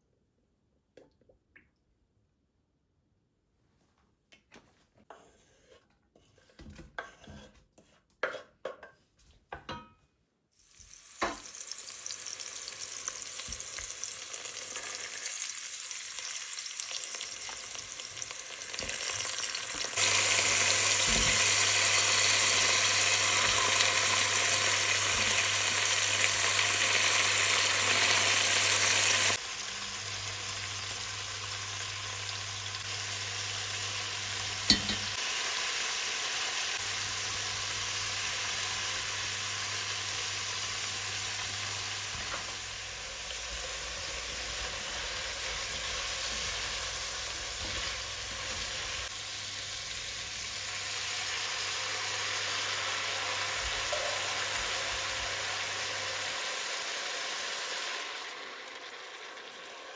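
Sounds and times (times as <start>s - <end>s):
kitchen appliance motor humming: 18.8s - 35.1s.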